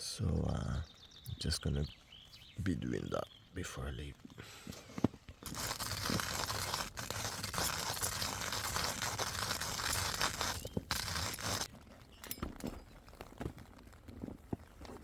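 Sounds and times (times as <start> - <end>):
packaging rustling and crinkling: 5.4 - 15.0.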